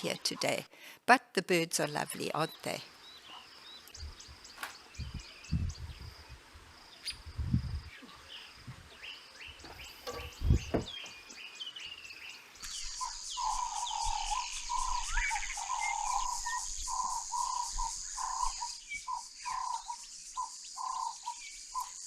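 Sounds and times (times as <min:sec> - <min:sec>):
wild birds chirping: 0:02.1 - 0:22.0
thump: 0:10.0 - 0:11.0
high shrill insect drone: 0:12.8 - 0:22.0.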